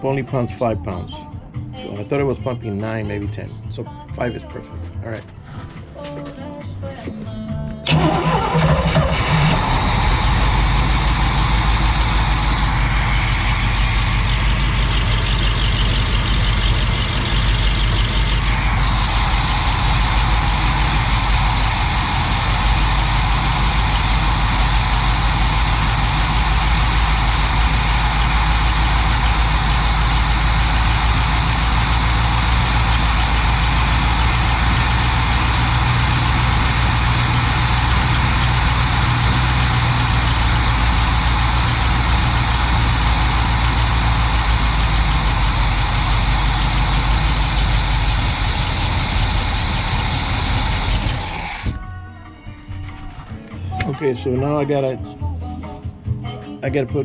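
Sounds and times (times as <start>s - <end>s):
inboard boat engine running: 7.9s - 51.8s.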